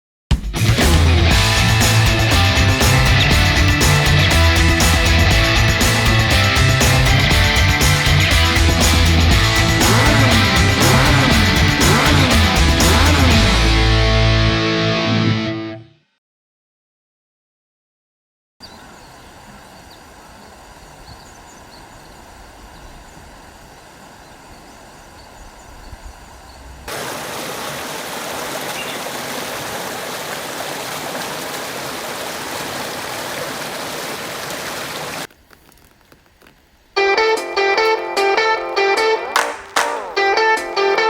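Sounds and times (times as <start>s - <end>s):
river water running over rocks: 1.8s - 13.3s, 18.7s - 36.6s.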